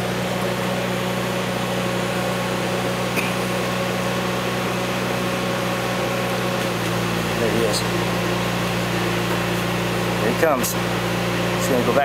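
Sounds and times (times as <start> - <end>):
welding machine humming: 0.0 - 12.0.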